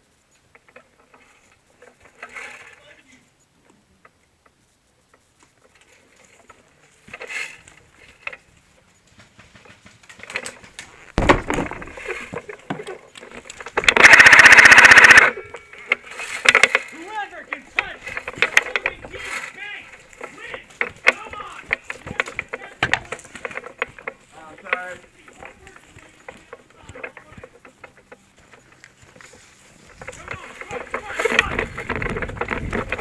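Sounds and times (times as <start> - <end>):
gear clicks and knocks: 0.4 - 3.1, 4.0 - 33.0
airsoft gun full-auto burst: 13.9 - 15.4.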